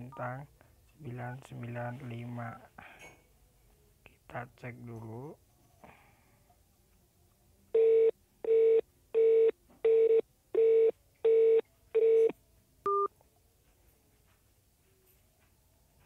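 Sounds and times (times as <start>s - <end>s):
phone keypad beeps: 12.9s - 13.1s.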